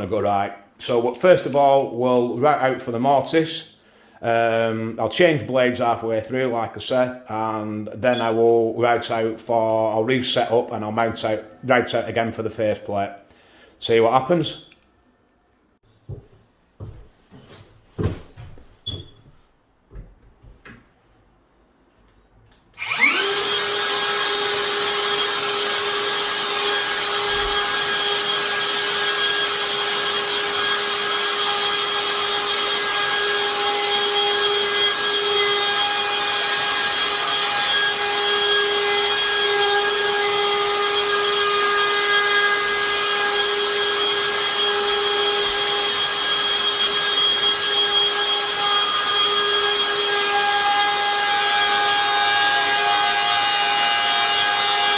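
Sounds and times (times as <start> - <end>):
router high-pitched whine: 22.8 - 54.9.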